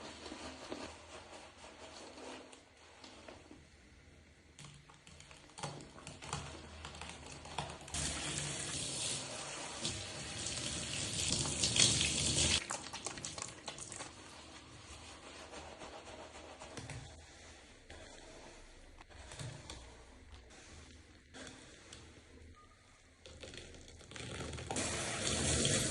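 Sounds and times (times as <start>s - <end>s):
hands rubbing wet hair: 0.0s - 3.6s, 11.3s - 20.1s
running water hiss: 24.8s - 25.9s.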